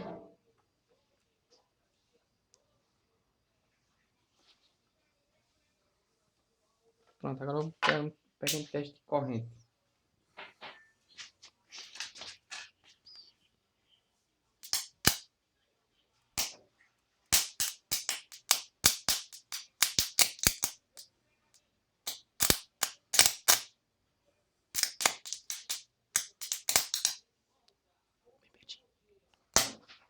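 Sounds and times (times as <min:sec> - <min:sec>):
electrical snaps and crackles: 0:14.6 - 0:15.2, 0:17.3 - 0:21.1, 0:22.1 - 0:23.7, 0:24.8 - 0:27.2, 0:29.6 - 0:29.8.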